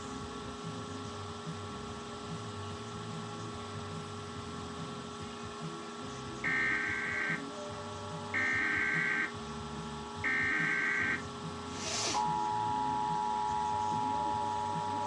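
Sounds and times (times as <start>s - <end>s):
electrical hum: 0.0s - 15.0s
digital alert header tones: 6.5s - 7.4s, 8.4s - 9.3s, 10.3s - 11.2s.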